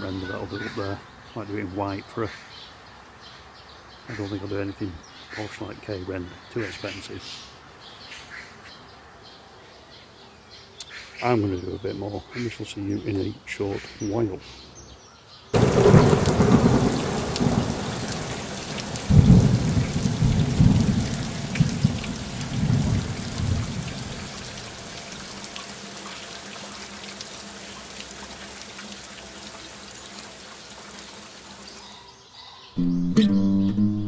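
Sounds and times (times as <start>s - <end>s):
thunder rumbling: 15.6s - 25.4s
heavy rain: 15.6s - 31.9s.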